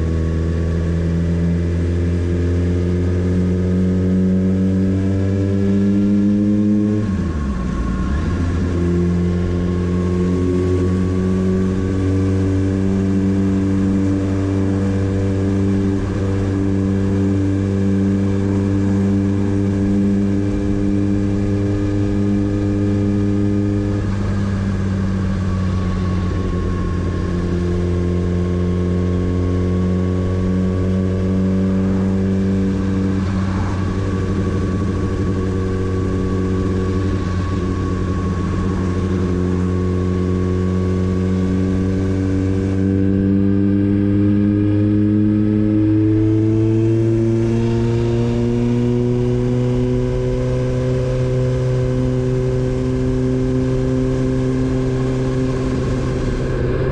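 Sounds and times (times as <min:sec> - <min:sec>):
motorcycle engine running: 0:00.0 - 0:56.9.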